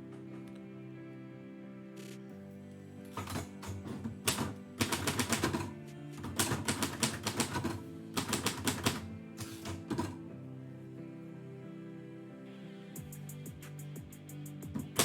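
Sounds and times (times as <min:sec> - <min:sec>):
background music: 0:00.0 - 0:15.0
typewriter keys striking: 0:03.1 - 0:10.2, 0:14.8 - 0:15.0.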